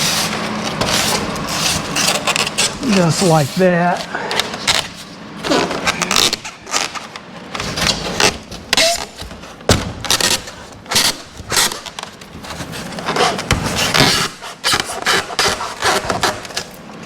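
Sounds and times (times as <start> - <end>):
foam scraping against metal door: 0.0 - 4.0.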